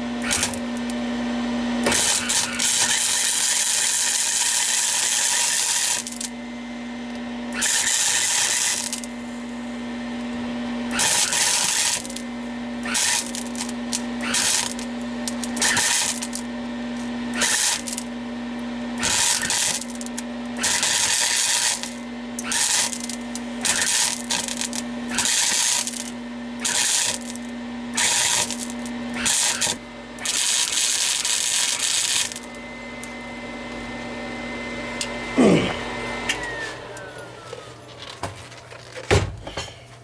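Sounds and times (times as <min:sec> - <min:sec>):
welding arc crackling: 0:00.0 - 0:06.4, 0:07.5 - 0:33.1
welder humming: 0:00.0 - 0:40.0.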